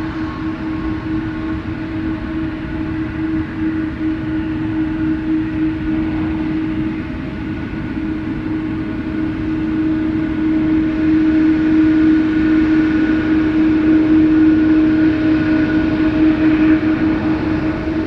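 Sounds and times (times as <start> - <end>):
jet engines roaring: 0.0 - 18.0.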